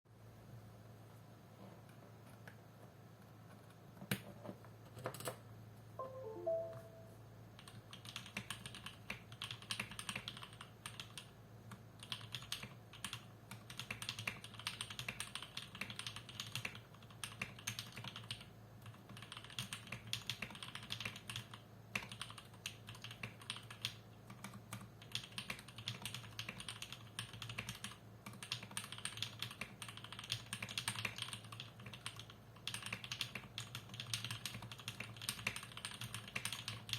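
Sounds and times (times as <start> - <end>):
mechanical keyboard typing: 7.6 - 36.9.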